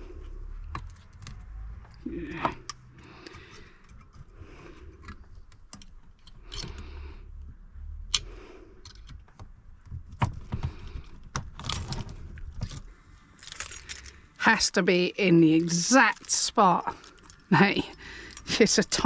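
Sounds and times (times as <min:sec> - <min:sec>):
small metal parts clicking and rattling: 0:00.8 - 0:06.9, 0:08.8 - 0:14.4, 0:16.1 - 0:19.0.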